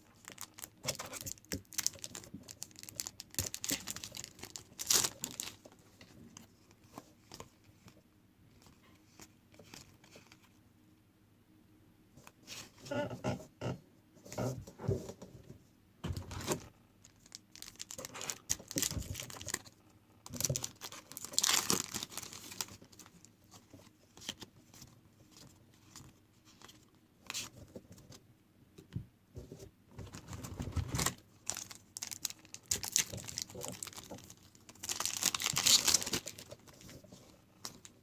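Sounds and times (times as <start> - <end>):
foil wrappers tearing and crinkling: 0.2 - 5.6, 16.5 - 19.7, 20.3 - 23.1, 30.9 - 36.9.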